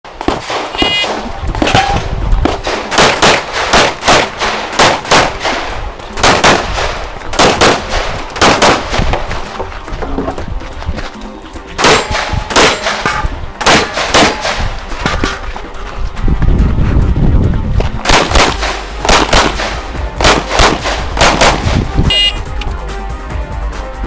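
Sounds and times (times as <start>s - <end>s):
pistol shots: 0.2s - 9.3s, 11.8s - 15.4s, 18.0s - 21.9s
shot timer beep: 0.7s - 2.0s, 22.1s - 22.4s.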